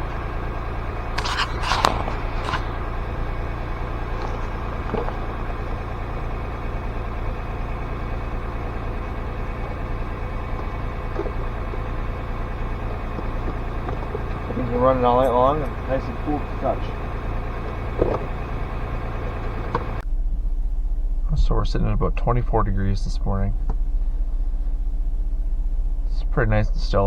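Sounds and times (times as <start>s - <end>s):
car engine idling: 0.0s - 27.0s
short scrapes and clicks: 1.1s - 3.1s.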